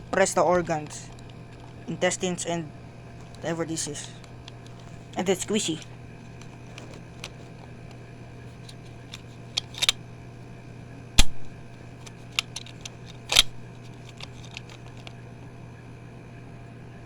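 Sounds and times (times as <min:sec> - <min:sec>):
plastic toy parts clicking and knocking: 0:08.6 - 0:10.0, 0:12.0 - 0:15.1.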